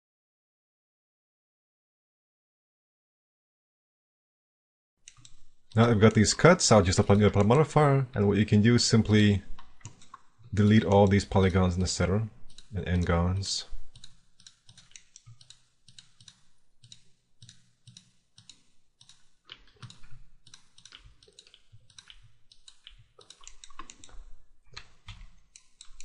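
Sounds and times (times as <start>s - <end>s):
computer mouse clicks: 5.0s - 8.3s, 9.5s - 11.6s, 12.5s - 13.1s, 13.9s - 26.0s.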